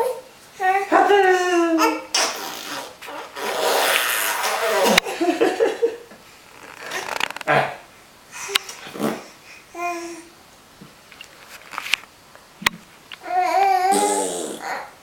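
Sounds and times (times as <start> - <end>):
baby making playful vocal noises: 0.6 - 5.0, 13.2 - 15.0.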